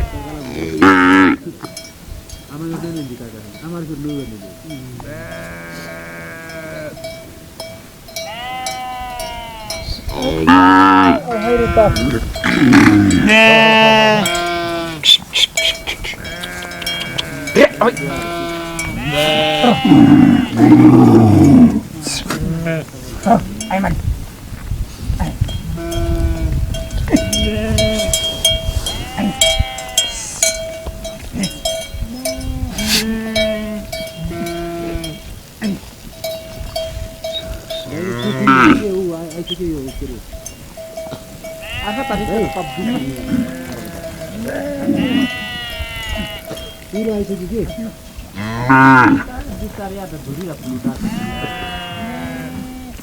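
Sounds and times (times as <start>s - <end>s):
sheep bleating: 0.0s - 1.4s, 5.0s - 7.0s, 8.2s - 15.1s, 15.8s - 22.9s, 27.2s - 28.1s, 28.9s - 30.4s, 31.5s - 35.2s, 37.4s - 39.0s, 41.6s - 46.8s, 50.9s - 53.0s
bells clanking: 1.5s - 5.6s, 6.5s - 10.6s, 11.2s - 14.6s, 15.6s - 20.0s, 25.5s - 35.2s, 46.4s - 48.3s.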